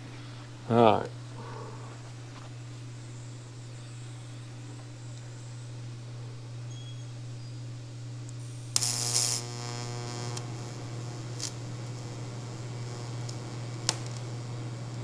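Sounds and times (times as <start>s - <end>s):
welder humming: 6.6s - 15.0s
welding arc hissing and crackling: 8.2s - 15.0s.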